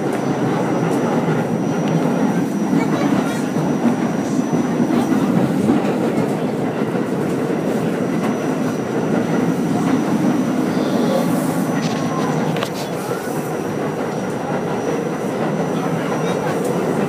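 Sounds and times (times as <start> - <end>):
subway wheels rumbling on rail: 0.0 - 17.0.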